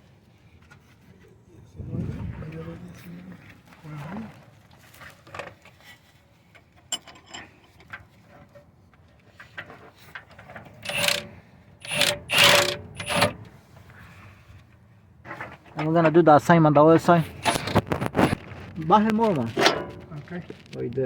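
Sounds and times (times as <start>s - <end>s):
metal parts scraping: 10.6s - 13.5s, 17.0s - 18.7s, 19.3s - 20.3s
small metal clicks: 10.8s - 13.4s, 17.2s - 18.4s.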